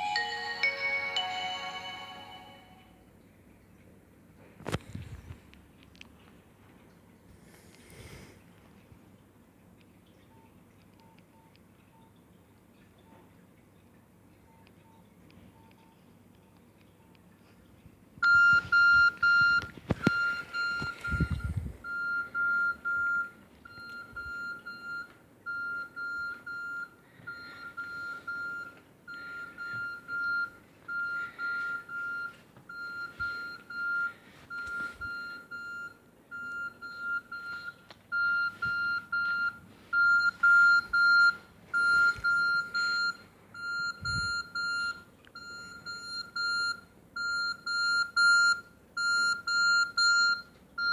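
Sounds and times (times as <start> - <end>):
phone ringtone beeping: 0.0 - 2.9.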